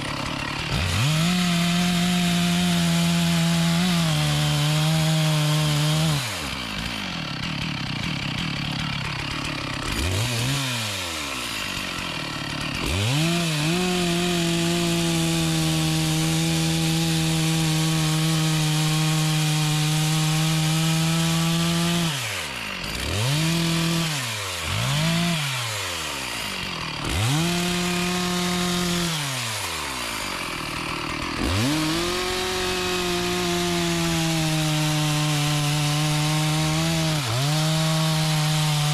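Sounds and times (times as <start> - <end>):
chainsaw cutting wood: 0.0 - 38.9.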